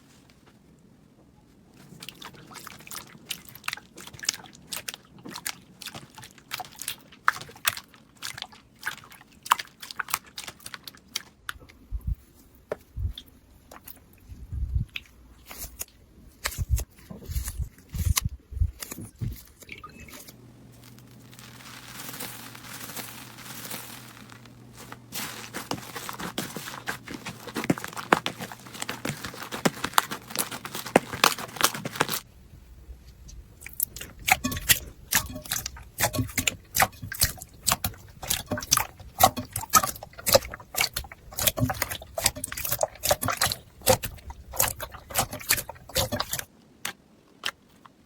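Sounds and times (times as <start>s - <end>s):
crunchy slime crackling and popping: 14.9s - 32.3s, 33.6s - 47.9s
soft steady hiss: 18.4s - 34.2s.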